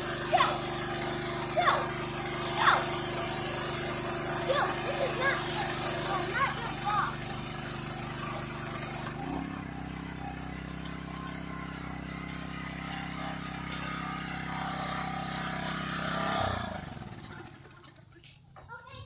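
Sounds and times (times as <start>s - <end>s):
pressure washer spray hissing: 0.0s - 9.1s
pressure washer motor: 0.0s - 18.4s.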